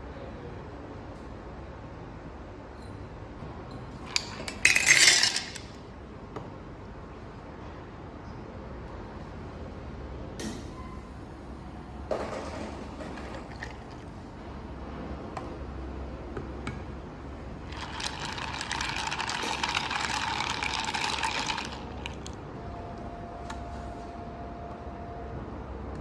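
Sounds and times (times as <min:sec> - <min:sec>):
espresso machine pump hum: 0:17.5 - 0:22.4.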